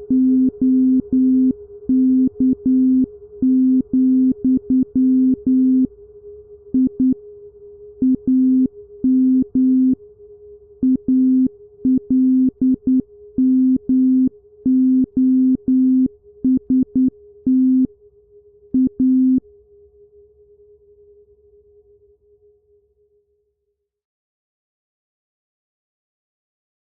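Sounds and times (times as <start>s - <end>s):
steady electronic hum tone: 0.0s - 19.6s.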